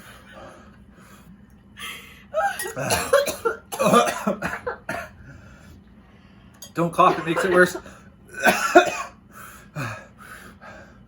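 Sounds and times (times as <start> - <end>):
person coughing: 2.4 - 5.2, 7.0 - 9.2.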